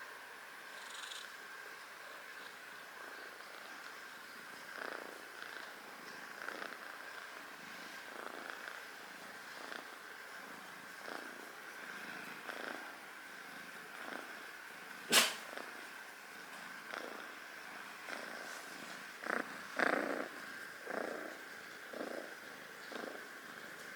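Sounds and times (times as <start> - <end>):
kitten purring: 0.7 - 1.4, 2.0 - 15.9, 16.6 - 23.9.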